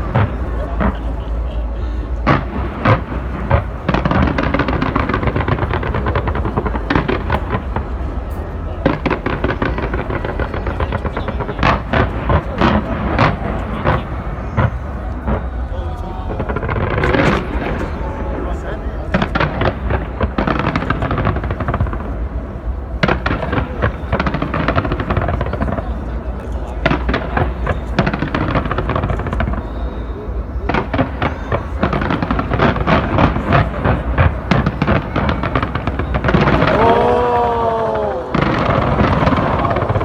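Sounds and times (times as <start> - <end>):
fireworks crackling and banging: 0.0 - 40.0
person shouting: 36.6 - 38.8.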